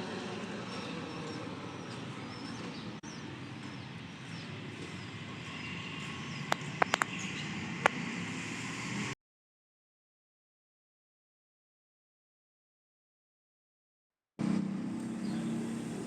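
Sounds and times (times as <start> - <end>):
small birds chirping: 0.0 - 8.0, 15.0 - 16.0
sharp clicks: 6.5 - 7.2.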